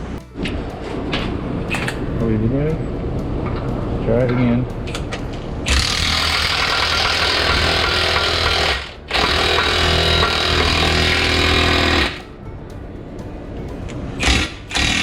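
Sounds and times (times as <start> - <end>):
impact wrench hammering: 4.9 - 12.3, 14.2 - 15.0.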